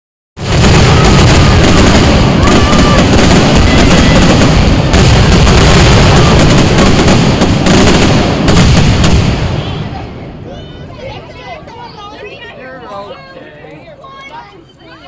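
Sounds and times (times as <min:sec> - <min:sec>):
fireworks bangs: 0:00.4 - 0:11.1.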